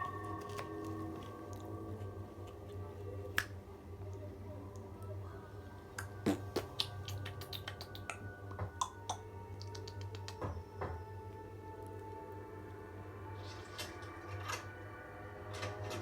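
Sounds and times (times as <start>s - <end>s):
low hum: 0.0s - 9.8s.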